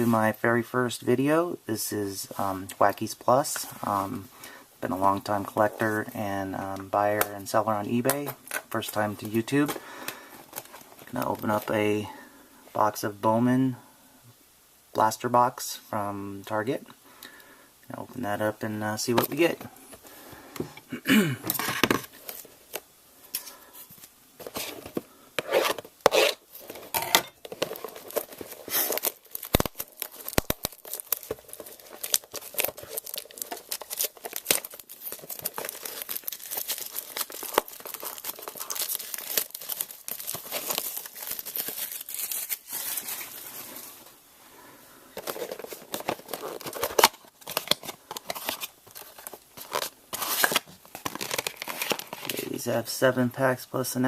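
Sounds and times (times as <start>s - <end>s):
cardboard box tearing and crinkling: 25.4s - 43.4s, 45.2s - 52.4s.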